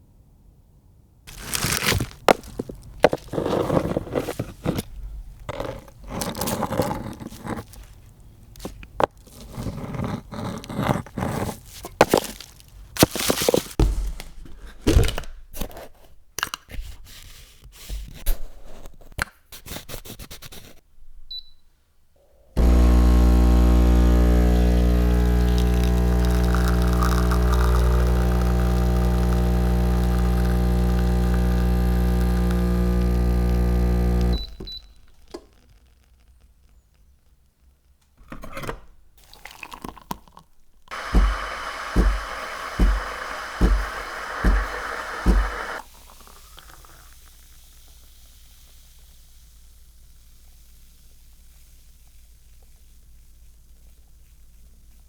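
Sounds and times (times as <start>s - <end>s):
objects knocking and scraping: 1.3s - 8.0s
machine humming: 22.6s - 34.6s, 40.9s - 45.8s.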